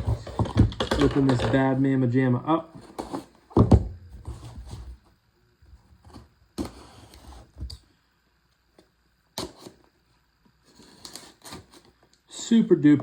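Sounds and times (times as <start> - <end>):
packaging clicks and knocks: 0.2 - 1.6.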